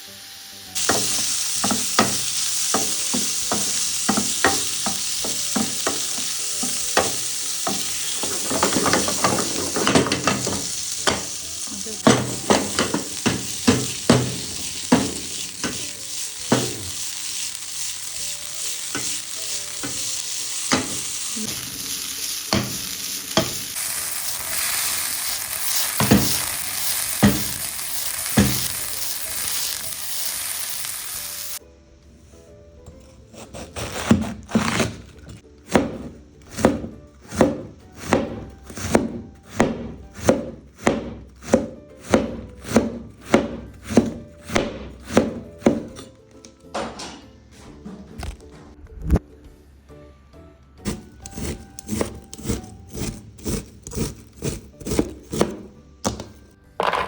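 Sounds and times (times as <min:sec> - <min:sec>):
food sizzling in a pan: 0:00.0 - 0:31.6
knife chopping on cutting board: 0:12.0 - 0:15.8, 0:26.0 - 0:26.4, 0:27.2 - 0:27.6, 0:33.3 - 0:46.1, 0:50.8 - 0:57.0.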